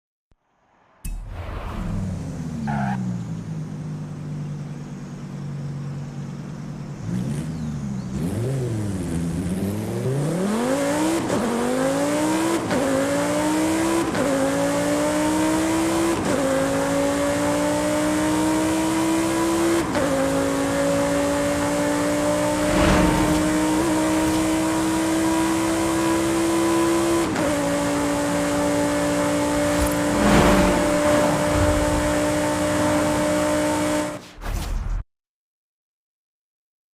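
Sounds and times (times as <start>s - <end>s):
car engine shifting up gears: 16.3s - 34.2s.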